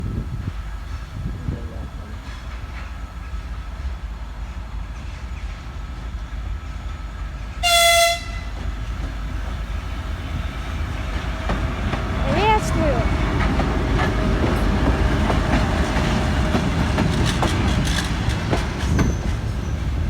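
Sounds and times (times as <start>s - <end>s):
train rumbling: 0.0s - 20.0s
high-pitched train horn toot: 7.6s - 8.6s.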